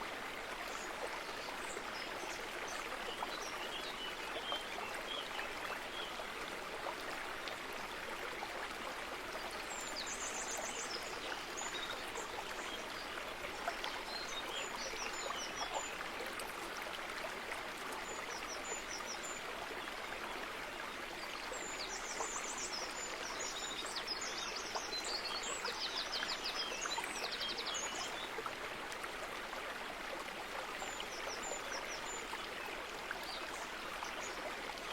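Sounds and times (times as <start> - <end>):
stream water running: 0.0 - 34.9.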